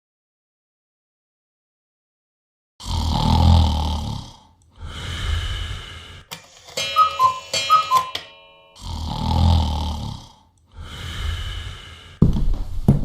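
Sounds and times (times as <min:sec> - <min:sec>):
person snoring: 0:02.8 - 0:06.3, 0:08.8 - 0:12.2
clock clicks: 0:06.3 - 0:08.8
two-note descending chime: 0:06.6 - 0:09.0.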